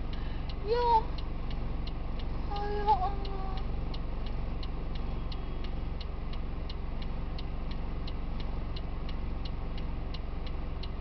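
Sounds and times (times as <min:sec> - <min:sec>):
low mechanical hum: 0:00.0 - 0:11.0.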